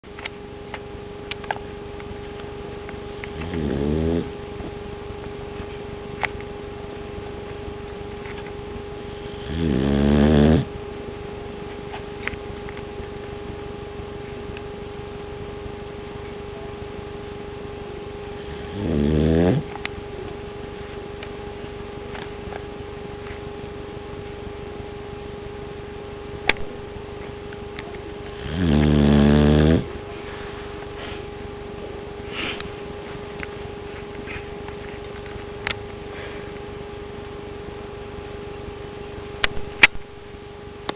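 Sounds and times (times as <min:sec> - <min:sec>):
steady background hum: 0:00.0 - 0:40.9
pet snoring: 0:03.3 - 0:04.4, 0:09.1 - 0:10.8, 0:18.4 - 0:19.8, 0:28.3 - 0:30.0.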